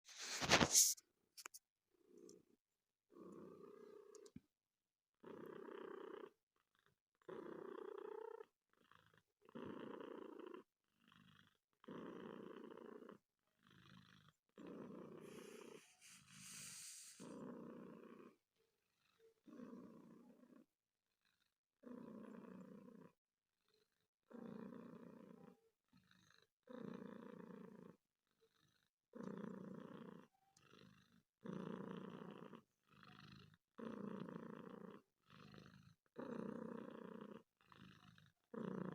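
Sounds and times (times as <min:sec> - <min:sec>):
cat purring: 0:02.0 - 0:04.4, 0:05.2 - 0:38.9.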